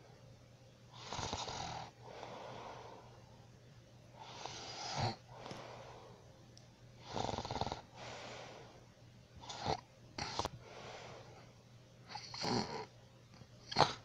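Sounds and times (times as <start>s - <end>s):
person snoring: 1.0s - 3.0s, 4.2s - 5.6s, 7.0s - 8.7s, 9.4s - 11.2s, 12.1s - 12.9s.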